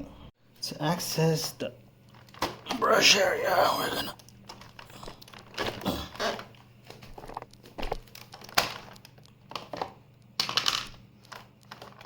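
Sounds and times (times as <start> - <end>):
plastic clicks and knocks: 4.5 - 12.0.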